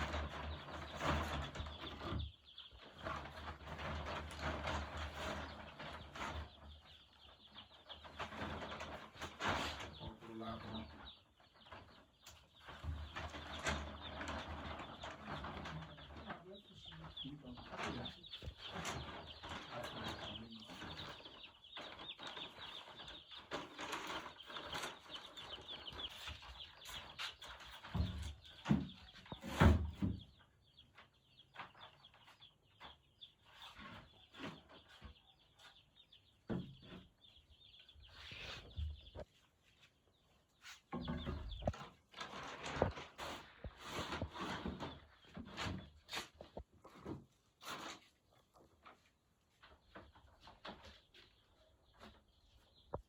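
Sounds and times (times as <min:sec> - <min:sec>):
chicks peeping: 0:00.0 - 0:53.0.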